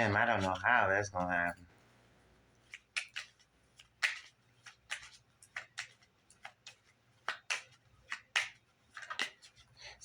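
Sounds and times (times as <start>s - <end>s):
cards flicking and rustling: 2.6s - 9.8s.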